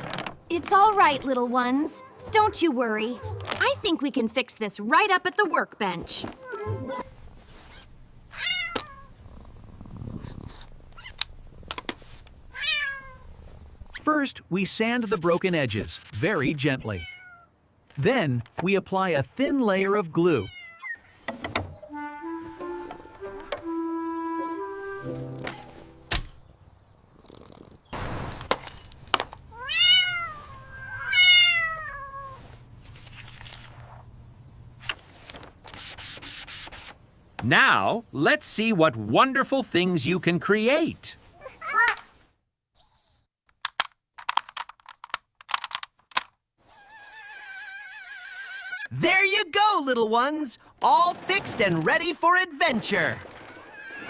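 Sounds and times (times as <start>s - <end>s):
cat meowing: 8.3s - 9.1s, 12.5s - 13.2s, 17.0s - 17.5s, 20.4s - 21.1s, 29.5s - 32.4s
burst of noise: 28.0s - 28.6s.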